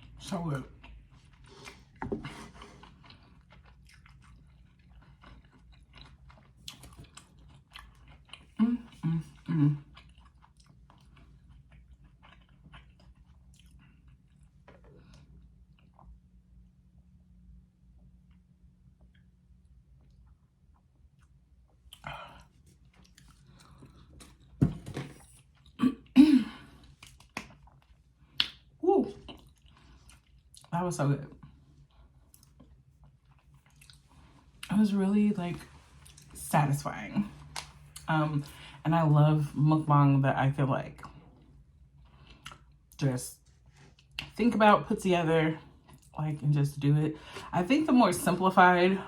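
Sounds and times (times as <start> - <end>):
person chewing food: 0.0 - 16.7, 18.2 - 30.7, 31.3 - 34.7, 35.6 - 36.4, 41.0 - 44.4, 45.6 - 46.2
throat-clearing: 25.8 - 26.7.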